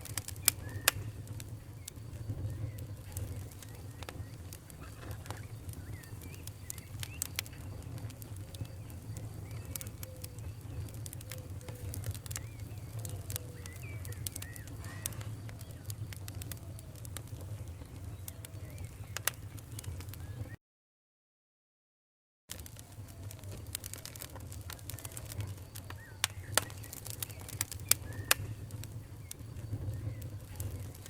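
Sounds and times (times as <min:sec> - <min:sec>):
low rumble of flames: 0:00.0 - 0:20.6, 0:22.5 - 0:31.0
wood fire crackling and popping: 0:00.0 - 0:20.6, 0:22.5 - 0:31.0
faint squeaky chirps: 0:00.4 - 0:16.8, 0:23.5 - 0:31.0.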